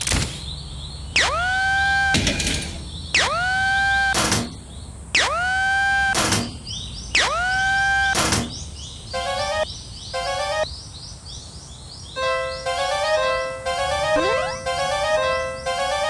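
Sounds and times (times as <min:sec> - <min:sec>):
cartoon crossing alarm tone: 0:13.9 - 0:15.6.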